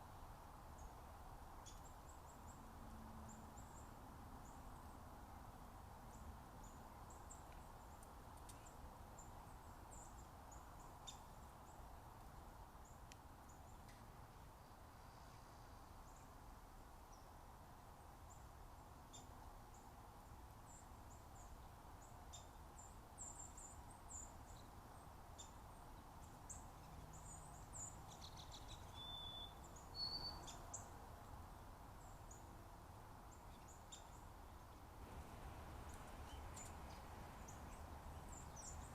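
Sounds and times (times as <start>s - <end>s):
small birds chirping: 1.6s - 2.6s, 20.7s - 31.0s, 33.2s - 38.9s.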